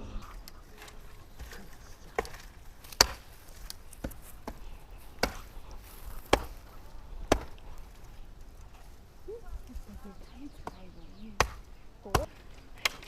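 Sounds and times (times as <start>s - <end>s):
sharp chopping strikes: 2.2s - 5.6s, 6.2s - 7.6s, 10.6s - 13.0s.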